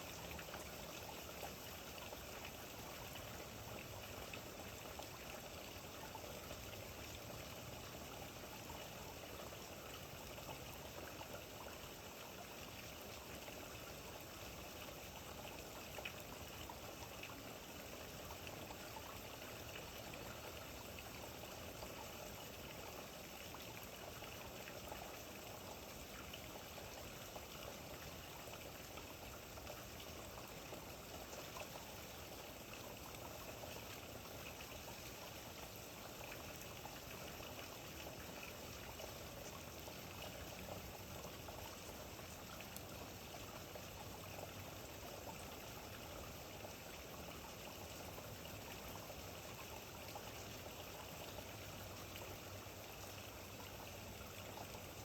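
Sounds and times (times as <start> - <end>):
running water: 0.0 - 55.0
rain patter: 15.2 - 55.0.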